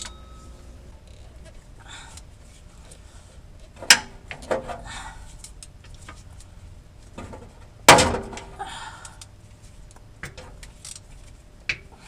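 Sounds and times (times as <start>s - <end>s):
loud metal clank: 7.9s - 8.5s.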